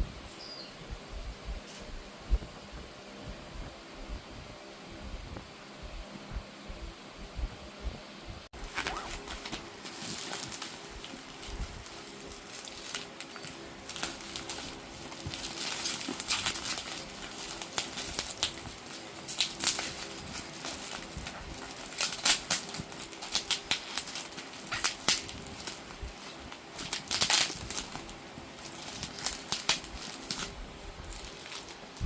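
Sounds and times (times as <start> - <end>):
rustling and crinkling: 8.6 - 32.0.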